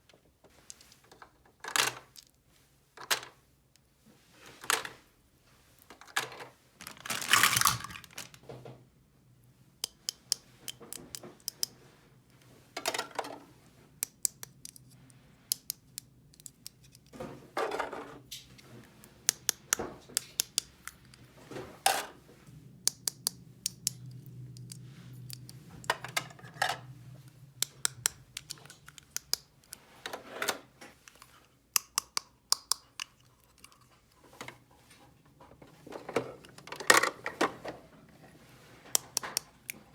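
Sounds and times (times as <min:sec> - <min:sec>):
plastic toy pieces clicking: 0:07.1 - 0:08.3, 0:14.0 - 0:14.9, 0:15.5 - 0:17.1, 0:19.2 - 0:21.2, 0:27.6 - 0:29.8, 0:31.8 - 0:33.8.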